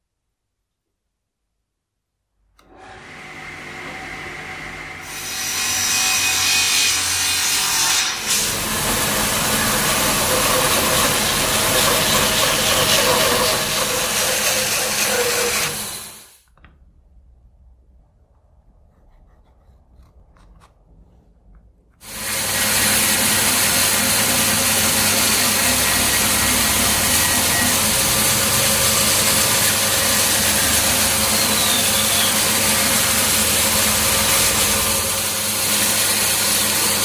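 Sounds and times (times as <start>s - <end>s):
power tool cutting wood: 2.6s - 16.4s, 22.0s - 37.0s.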